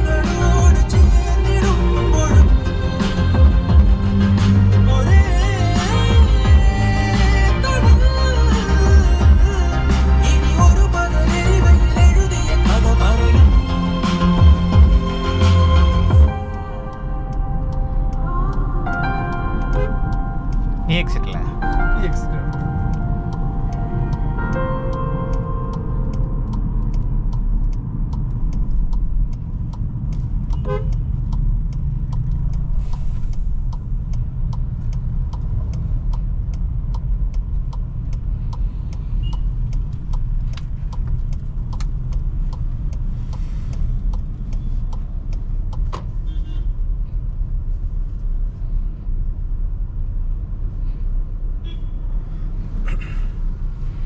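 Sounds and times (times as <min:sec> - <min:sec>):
car engine low rumble: 0:00.0 - 0:54.0
road noise: 0:00.0 - 0:54.0
car horn toots: 0:19.6 - 0:20.0, 0:30.6 - 0:31.0, 0:46.2 - 0:46.7, 0:51.6 - 0:52.0.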